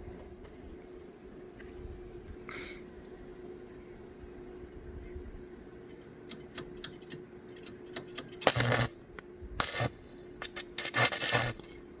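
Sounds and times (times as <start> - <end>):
electric arc welding crackling: 8.4 - 9.0, 9.6 - 12.0.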